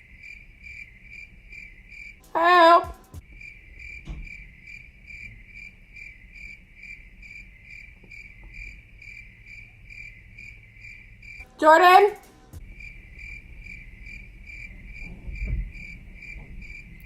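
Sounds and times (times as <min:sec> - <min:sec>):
cricket chirping: 0:00.0 - 0:17.0.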